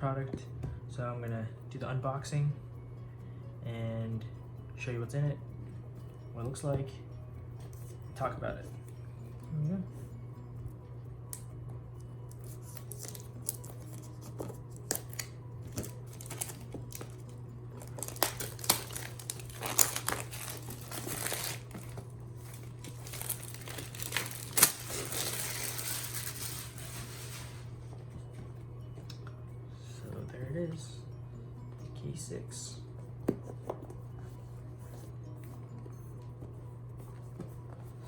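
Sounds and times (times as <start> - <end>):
steady low hum: 0.0 - 38.0
packaging crinkling and tearing: 14.8 - 17.2, 17.8 - 27.7
rustling: 17.9 - 27.8.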